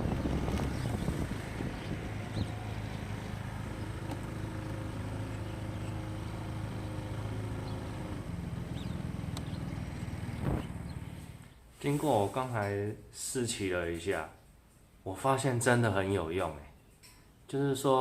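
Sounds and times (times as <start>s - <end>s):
scooter engine humming: 0.0s - 11.6s.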